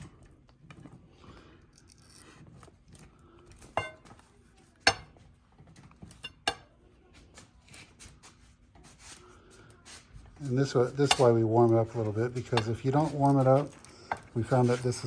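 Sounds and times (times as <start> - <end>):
sharp metallic clinks and knocks: 3.8 - 4.1.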